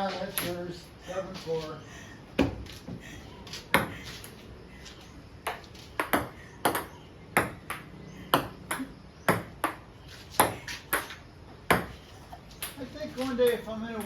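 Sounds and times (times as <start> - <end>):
ping pong ball hitting paddles: 5.4 - 12.0.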